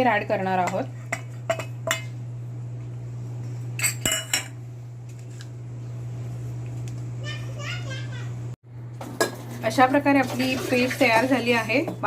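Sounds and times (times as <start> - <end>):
utensils clinking against dishes: 0.6 - 2.2, 3.8 - 4.6, 9.0 - 12.0.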